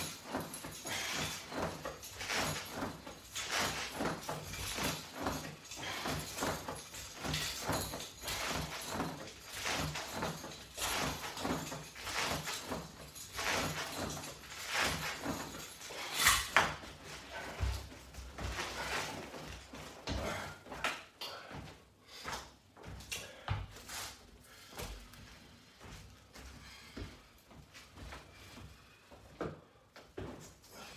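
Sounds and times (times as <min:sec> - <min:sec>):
rustling breathy strokes: 0:00.0 - 0:16.3.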